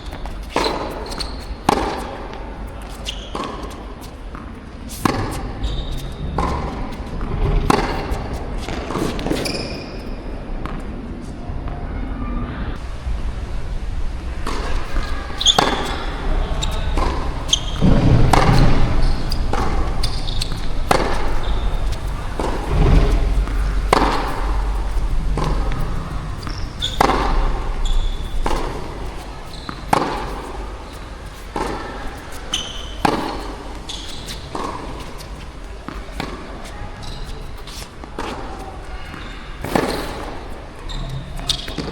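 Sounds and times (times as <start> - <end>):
tennis ball hits and bounces: 0.0 - 10.9, 12.8 - 41.9
wind rumbling on microphone: 10.4 - 35.8.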